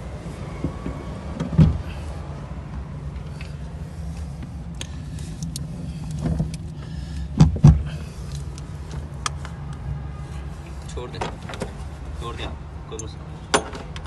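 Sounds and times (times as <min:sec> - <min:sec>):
steady low hum: 0:00.0 - 0:10.8.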